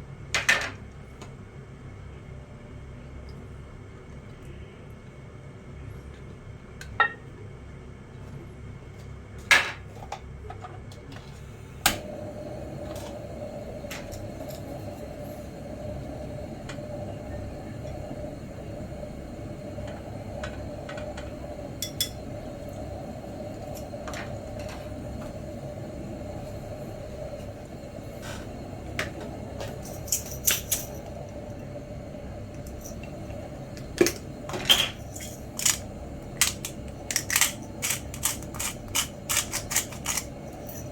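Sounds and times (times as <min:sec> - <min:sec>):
steady hum: 0:11.2 - 0:40.9.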